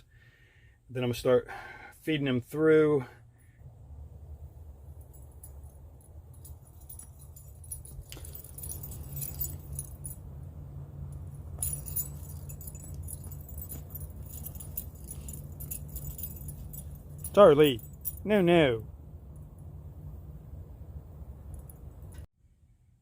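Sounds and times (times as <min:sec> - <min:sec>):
steady low hum: 0:00.0 - 0:23.0
metallic jingling and clinking: 0:04.6 - 0:20.5, 0:21.3 - 0:22.3.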